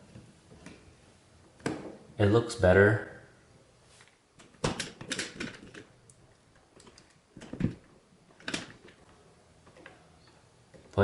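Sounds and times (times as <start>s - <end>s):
outlet clicks and rattles: 4.4s - 6.0s, 6.6s - 10.0s.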